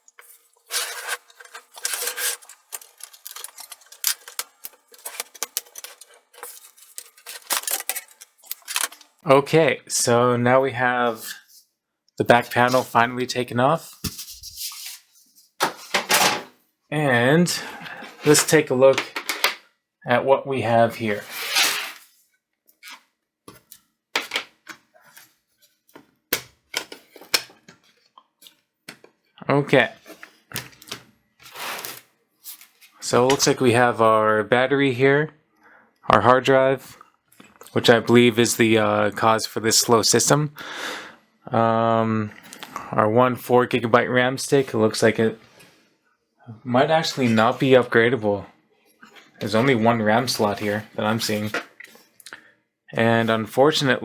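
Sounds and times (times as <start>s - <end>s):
pick scraping plastic seam: 0.2s - 9.2s.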